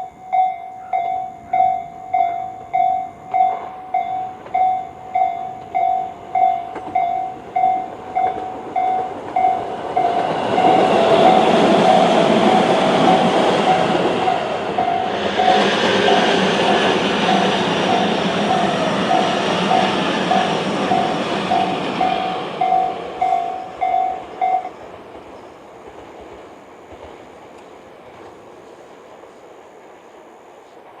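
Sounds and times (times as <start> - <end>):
level crossing warning bell: 0.0 - 24.8
train passing: 0.0 - 31.0.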